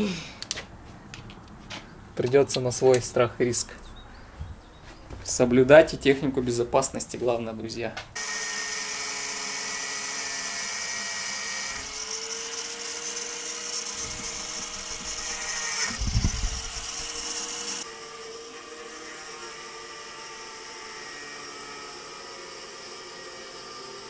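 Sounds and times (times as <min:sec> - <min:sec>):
angle grinder cutting metal: 0:08.2 - 0:24.0.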